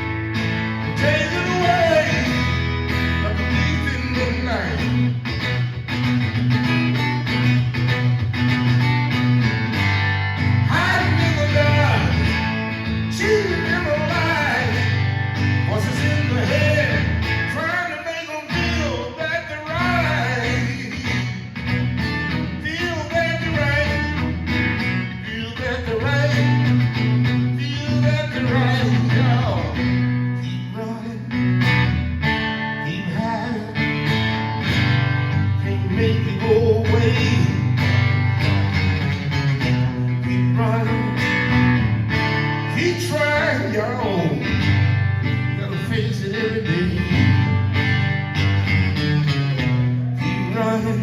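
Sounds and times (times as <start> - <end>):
blues guitar lead: 0.0 - 51.0.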